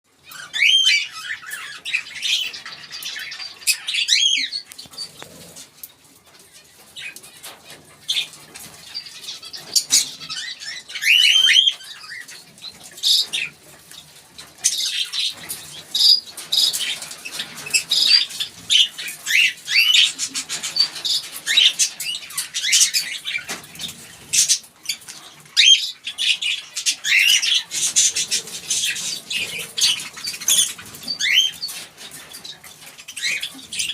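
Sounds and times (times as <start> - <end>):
lovebirds chirping: 14.6 - 33.9.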